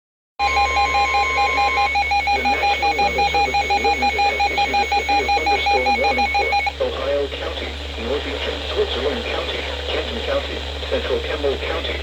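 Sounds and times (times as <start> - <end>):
steady high alarm tone: 0.4 - 6.7
rapid electronic beeping: 0.4 - 6.8.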